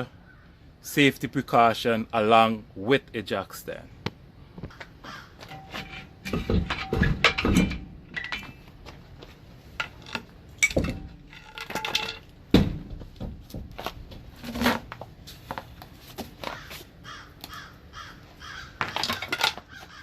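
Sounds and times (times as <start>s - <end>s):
metal tools clinking: 5.5s - 8.7s, 9.8s - 12.3s.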